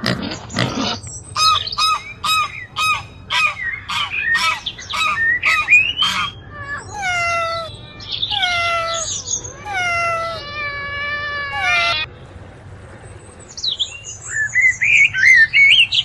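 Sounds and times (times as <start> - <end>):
short animal calls: 0.6 - 7.7
cat meowing: 1.9 - 12.1.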